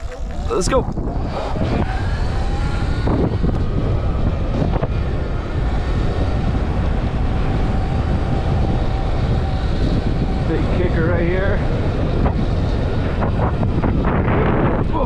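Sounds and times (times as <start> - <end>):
electric motor whining: 0.0 - 15.0
wind rumble on microphone: 0.0 - 15.0.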